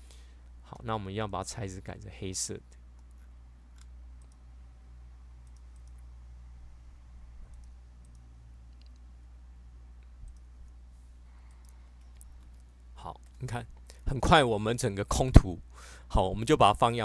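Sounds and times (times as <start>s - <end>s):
low electrical hum: 0.0s - 17.0s
computer mouse clicks: 3.0s - 4.5s, 5.4s - 6.1s, 7.4s - 9.2s, 10.0s - 10.8s, 11.4s - 13.4s.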